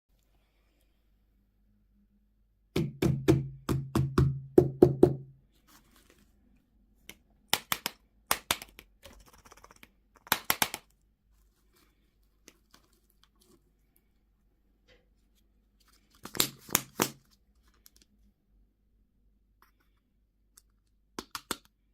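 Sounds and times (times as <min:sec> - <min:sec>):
plastic packaging taps and clicks: 0:07.5 - 0:08.9, 0:10.2 - 0:10.9.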